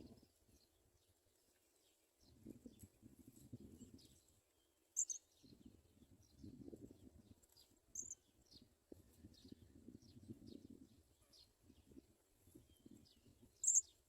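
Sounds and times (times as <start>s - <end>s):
sparrows chirping faintly: 0.0s - 14.0s.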